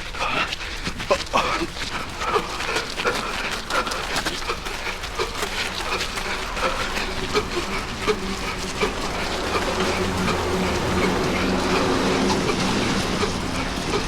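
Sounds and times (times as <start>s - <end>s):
heavy wheezing breathing: 0.0s - 14.0s
wind rumble on microphone: 6.6s - 14.0s.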